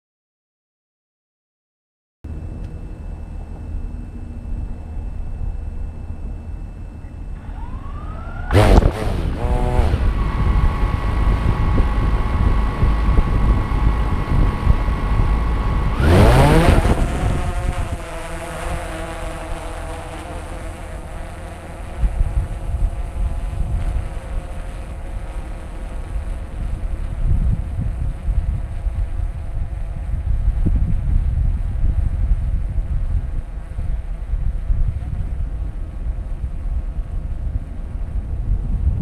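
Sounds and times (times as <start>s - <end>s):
drone motors whining: 2.3s - 30.5s
drone propeller buzz: 2.3s - 38.5s.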